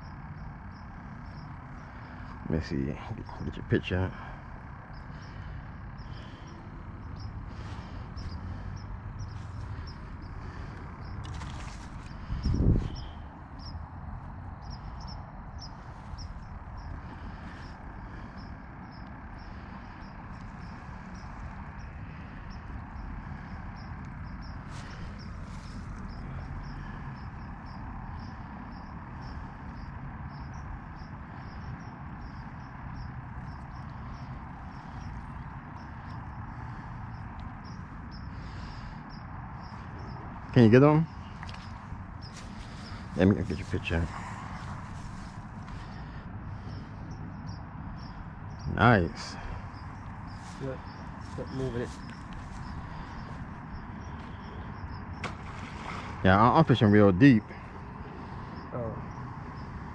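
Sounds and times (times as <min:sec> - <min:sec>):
insects chirping: 0:00.0 - 0:59.9
wind rumble on microphone: 0:06.6 - 0:38.2, 0:39.0 - 0:56.5
crackling rustle: 0:10.4 - 0:13.2.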